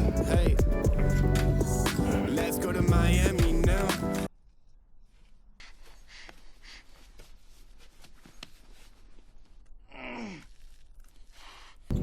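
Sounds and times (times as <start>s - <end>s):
person breathing hard: 5.5s - 7.7s, 11.2s - 11.9s
person groaning with strain: 9.9s - 10.8s.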